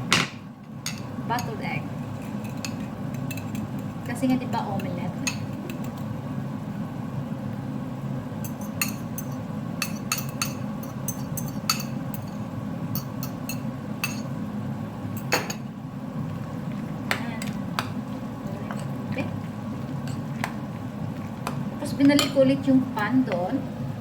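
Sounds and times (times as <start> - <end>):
steady low hum: 0.0 - 24.0
utensil clinking against bowl: 0.8 - 6.1, 8.4 - 14.3, 22.0 - 22.5.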